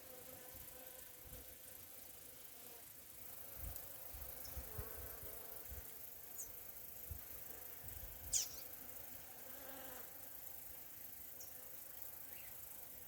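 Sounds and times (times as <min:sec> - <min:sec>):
high falling bird chirp: 0:08.3 - 0:08.7.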